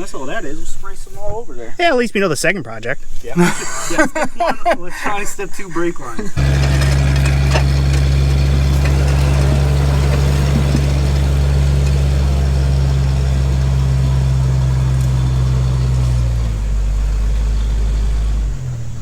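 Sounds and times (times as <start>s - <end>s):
vehicle engine idling: 6.1s - 19.0s.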